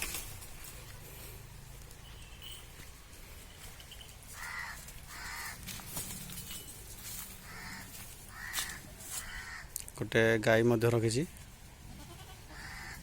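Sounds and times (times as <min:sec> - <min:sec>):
crow cawing: 0:04.4 - 0:05.6, 0:07.4 - 0:09.8, 0:12.5 - 0:13.0.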